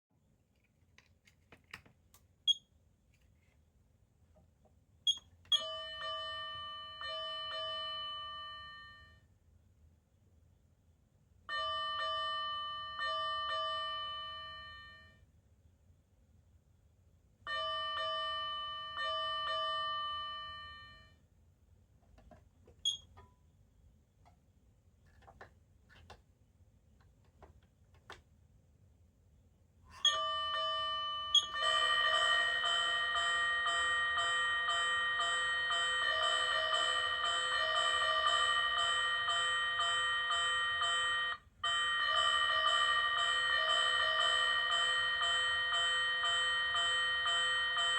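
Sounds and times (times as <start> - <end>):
electronic bell tone: 17.5 - 21.2, 29.9 - 47.9.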